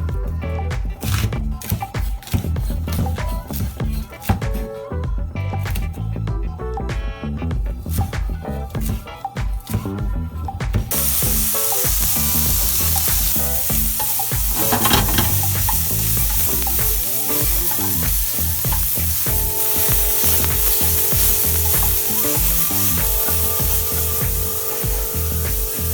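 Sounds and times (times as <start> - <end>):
food sizzling in hot fat: 10.8 - 25.9
stirring in a pan: 10.9 - 25.9.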